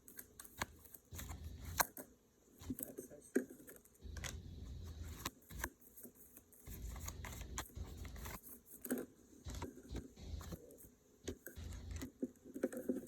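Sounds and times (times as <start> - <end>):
cards being shuffled: 0.3 - 1.8, 4.1 - 5.8, 6.6 - 10.7.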